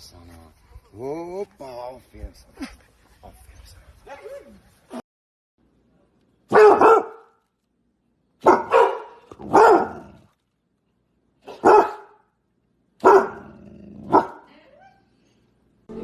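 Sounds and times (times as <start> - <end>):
dog barking loudly: 6.5 - 7.4, 8.4 - 10.2, 11.4 - 12.2, 13.0 - 14.5.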